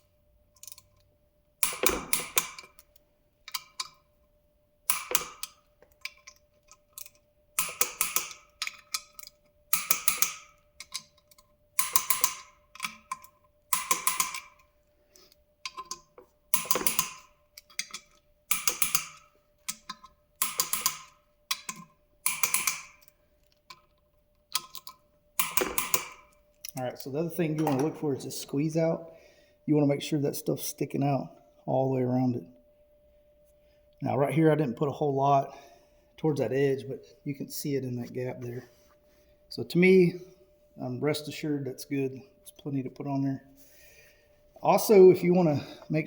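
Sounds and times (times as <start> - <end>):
ratchet wrench clicking: 4.9 - 6.2, 7.0 - 11.1, 11.8 - 14.6, 15.7 - 23.1, 24.6 - 26.2.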